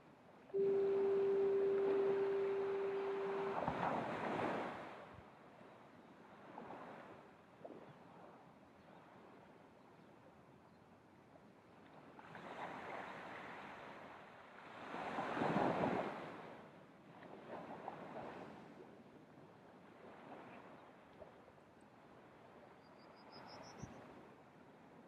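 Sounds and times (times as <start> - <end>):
ocean surf breaking on beach: 0.6 - 5.0.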